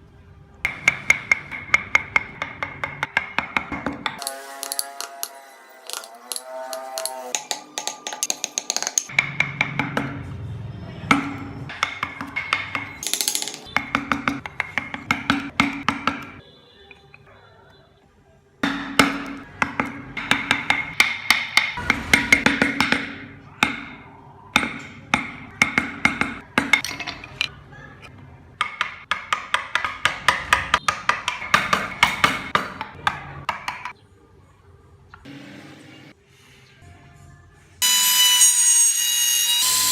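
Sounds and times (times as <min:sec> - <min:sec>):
carving tools knocking on wood: 0:00.7 - 0:06.1, 0:06.7 - 0:10.2, 0:11.1 - 0:16.4, 0:18.6 - 0:24.0, 0:24.6 - 0:27.5, 0:28.6 - 0:34.0.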